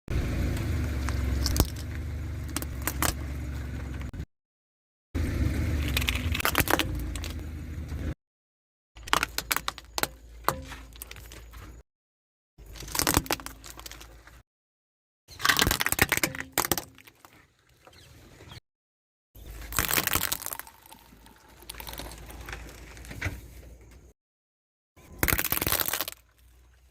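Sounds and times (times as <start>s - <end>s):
metal crunching: 0.1s - 4.2s, 5.2s - 8.2s, 9.0s - 11.8s, 12.6s - 14.4s, 15.3s - 18.6s, 19.4s - 23.6s
sharp cracks and snaps: 5.7s - 7.4s, 15.3s - 17.4s, 19.6s - 23.2s, 25.2s - 26.5s.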